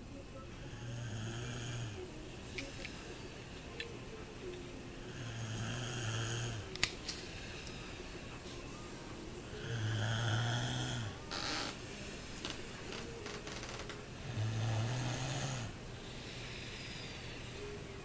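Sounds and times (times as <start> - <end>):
person snoring: 0.6 - 2.1, 5.0 - 6.7, 9.5 - 11.8, 12.4 - 17.8.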